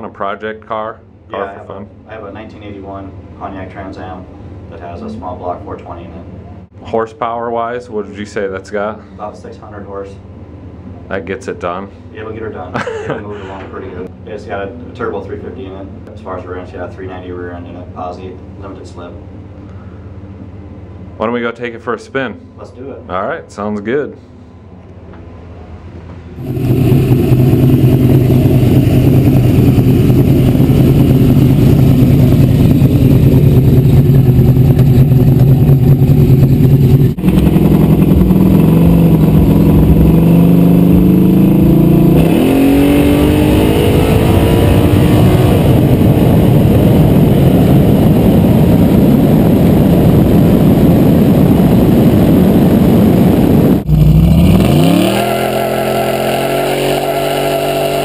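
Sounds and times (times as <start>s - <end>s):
car engine accelerating: 26.4s - 58.0s.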